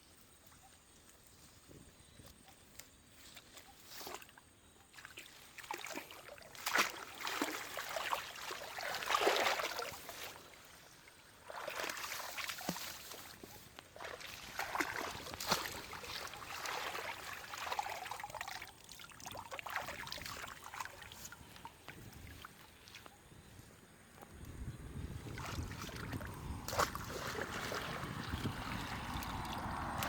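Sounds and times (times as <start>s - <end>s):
shallow water splashing: 5.0s - 23.0s, 25.0s - 30.0s.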